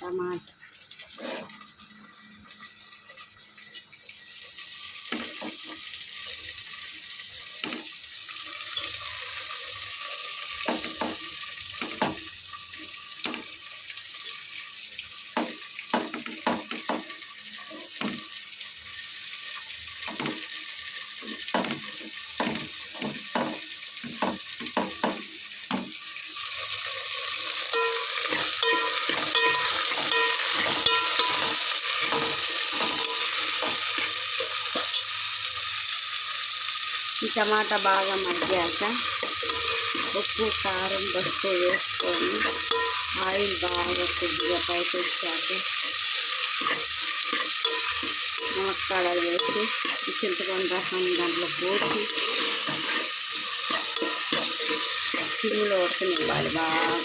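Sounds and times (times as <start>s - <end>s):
food sizzling in hot oil: 0.0s - 57.0s
spoon scraping a pan: 1.0s - 1.7s, 26.7s - 35.3s, 37.8s - 57.0s.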